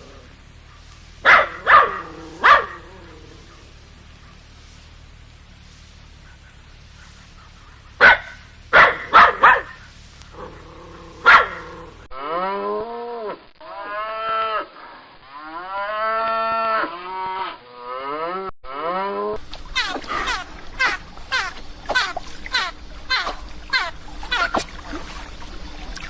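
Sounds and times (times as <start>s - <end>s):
cattle mooing: 1.2s - 4.4s, 10.3s - 14.7s.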